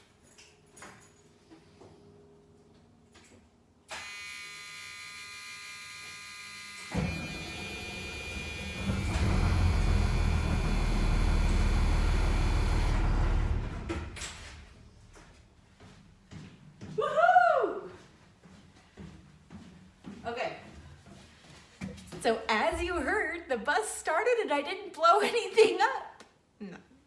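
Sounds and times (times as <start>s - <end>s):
electronic warning buzz: 3.9s - 13.1s
bus engine starting and running: 6.8s - 14.8s.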